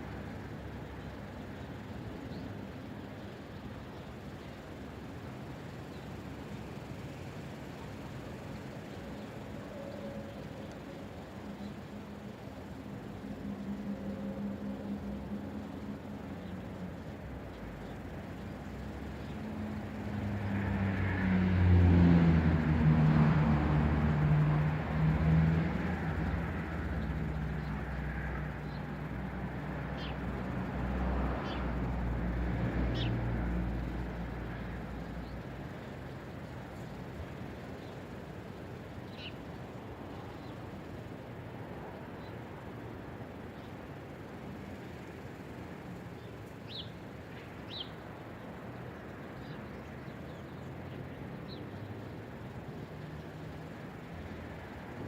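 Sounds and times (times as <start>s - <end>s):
small bird chirping: 29.9s - 30.4s, 31.4s - 31.7s, 33.8s - 42.5s, 43.4s - 54.4s
bird chirping: 39.0s - 39.5s, 46.2s - 53.5s.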